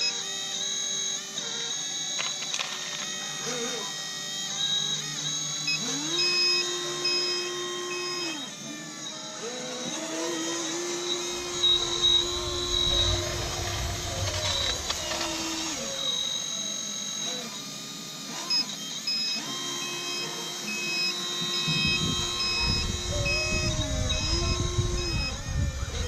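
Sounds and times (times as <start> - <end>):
electric motor whining: 0.0 - 26.0
wind rumbling on microphone: 11.2 - 16.4, 21.7 - 26.0.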